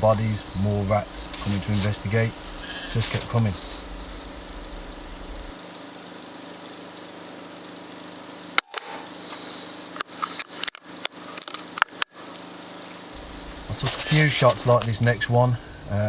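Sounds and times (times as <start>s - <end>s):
steady low hum: 0.0s - 5.7s, 13.1s - 16.0s.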